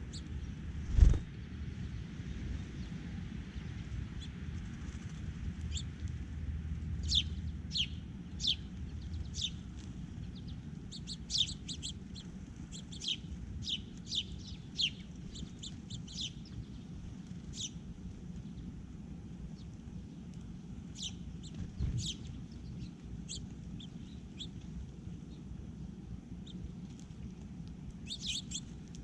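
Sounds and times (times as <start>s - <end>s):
songbirds calling: 0.0s - 1.3s, 7.0s - 29.0s
steady low rumble: 0.0s - 2.0s.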